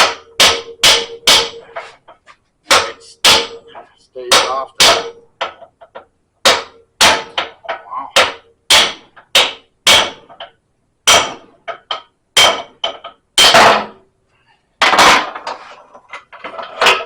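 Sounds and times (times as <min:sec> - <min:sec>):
hammer striking metal tool: 0:00.0 - 0:01.9, 0:02.7 - 0:05.7, 0:06.4 - 0:14.0.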